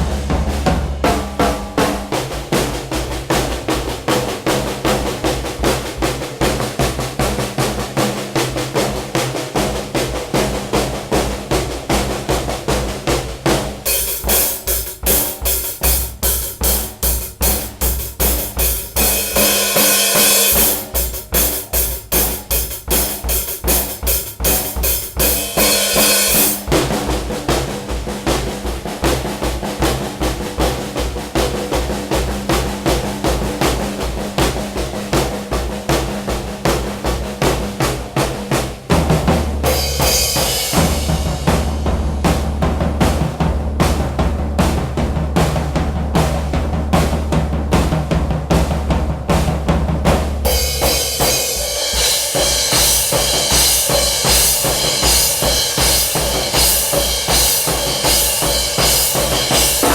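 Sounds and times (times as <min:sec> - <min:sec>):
kick drum and snare hits: 0:00.0 - 0:05.4, 0:10.5 - 0:59.9
cymbal crashes: 0:17.1 - 0:27.2, 0:39.7 - 0:42.5, 0:50.4 - 0:59.9.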